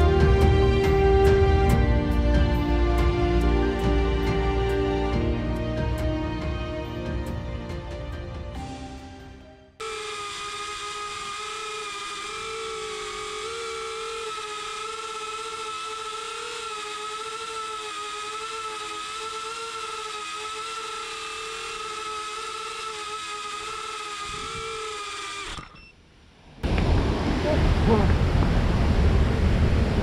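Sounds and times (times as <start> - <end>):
background music: 0.0 - 9.8
drone propellers whining: 0.0 - 26.0.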